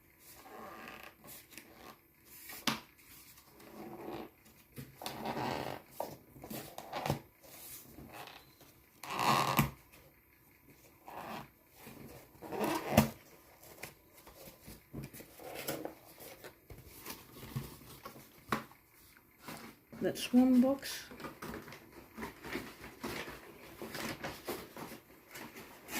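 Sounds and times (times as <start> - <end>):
paper packaging rustling and tearing: 11.8 - 25.9.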